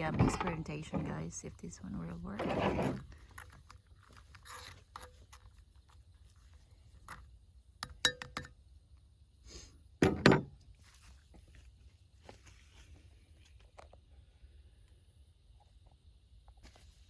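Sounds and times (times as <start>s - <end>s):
loud clunk: 10.0s - 10.5s.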